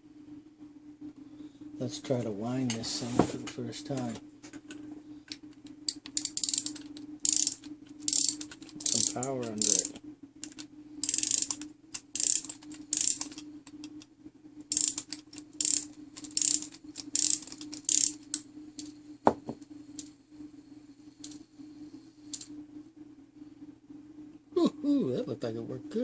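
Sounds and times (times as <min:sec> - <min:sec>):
clock ratchet clicking: 0:06.0 - 0:13.4, 0:14.7 - 0:18.4.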